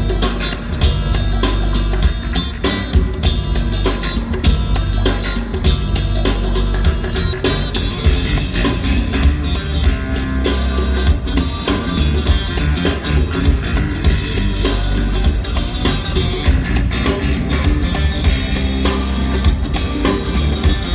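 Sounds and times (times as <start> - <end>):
loud rock music: 0.0 - 20.9.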